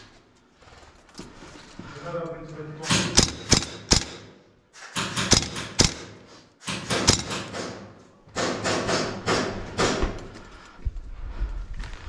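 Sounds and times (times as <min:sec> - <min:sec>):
sharp cracks: 0:02.9 - 0:10.0
heavy hard breathing: 0:10.1 - 0:12.0.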